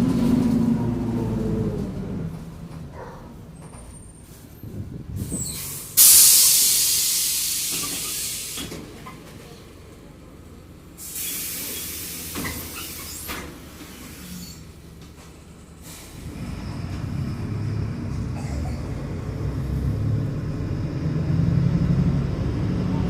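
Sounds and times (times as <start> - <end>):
bus engine running low: 0.0 - 23.0
compressed air hissing: 5.4 - 8.7, 11.0 - 13.3.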